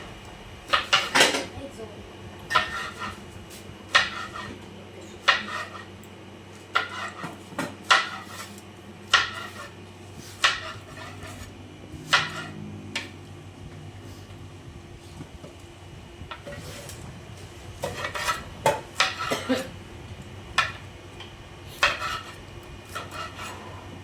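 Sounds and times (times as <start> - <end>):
utensils knocking against dishes: 0.7 - 1.5, 17.8 - 19.7.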